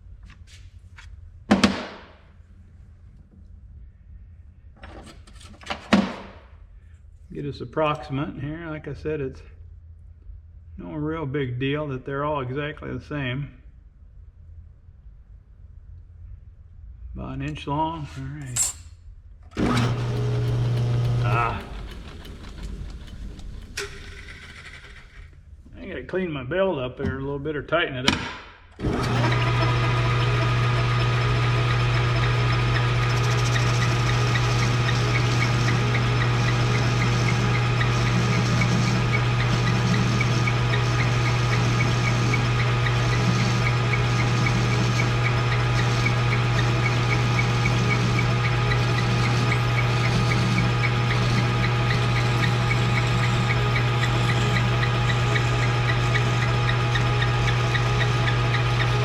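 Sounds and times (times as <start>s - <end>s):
metal lathe motor hum: 19.6s - 23.6s, 28.8s - 59.0s
drive belt squealing: 19.6s - 25.2s, 28.8s - 59.0s.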